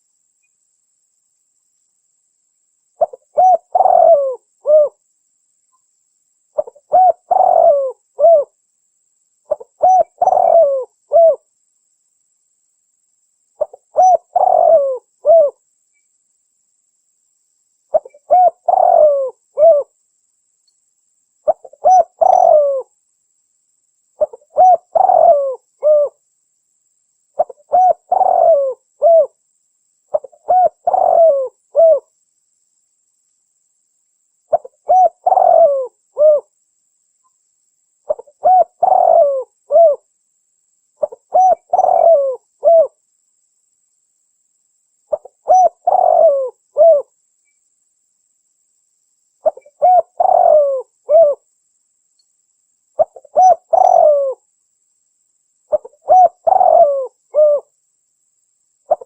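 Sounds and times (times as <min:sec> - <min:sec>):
dove cooing: 0:03.0 - 0:05.0, 0:06.6 - 0:08.6, 0:09.5 - 0:11.4, 0:13.6 - 0:15.6, 0:17.9 - 0:19.9, 0:21.5 - 0:22.9, 0:24.2 - 0:26.2, 0:27.4 - 0:29.4, 0:30.1 - 0:32.1, 0:34.5 - 0:36.5, 0:38.1 - 0:40.0, 0:41.0 - 0:43.0, 0:45.1 - 0:47.1, 0:49.4 - 0:51.4, 0:53.0 - 0:54.4, 0:55.7 - 0:57.7.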